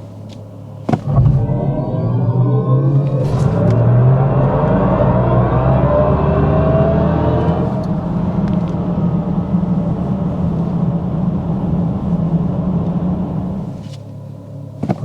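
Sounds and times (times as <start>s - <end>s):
tyre and road noise: 0.0s - 9.3s
synthetic car drive sound rising: 0.9s - 9.5s.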